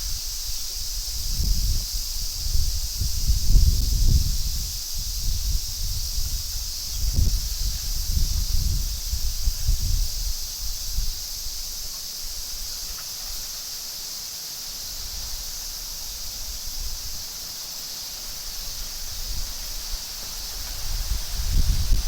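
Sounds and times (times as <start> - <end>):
wind buffeting microphone: 0.0 - 11.6, 18.6 - 22.0
insect chirring: 0.0 - 22.0
leaves rustling: 0.0 - 22.0
strong wind through trees: 0.0 - 22.0.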